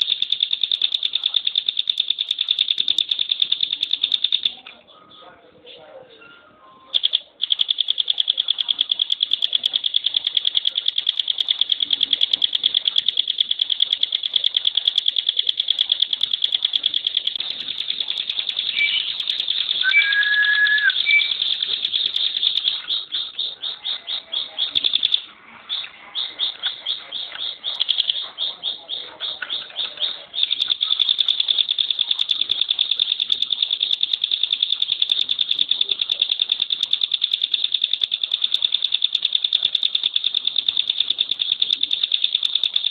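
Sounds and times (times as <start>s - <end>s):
bird high-pitched trill: 6.2s - 25.2s
low bird whistle: 18.7s - 19.1s, 19.8s - 21.4s.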